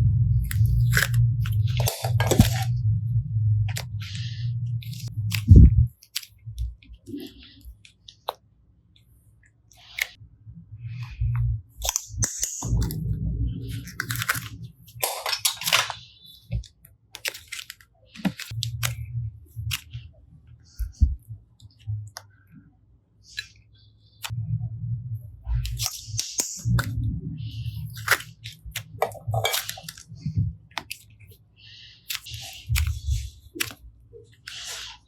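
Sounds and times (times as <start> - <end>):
hands squishing slime: 0.4 - 2.7, 3.7 - 8.5, 9.4 - 10.2, 11.8 - 22.4, 25.5 - 35.0.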